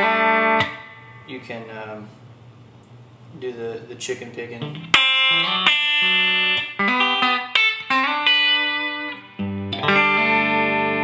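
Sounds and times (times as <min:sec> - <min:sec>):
electric guitar picking licks: 0:00.0 - 0:01.4, 0:04.6 - 0:11.0.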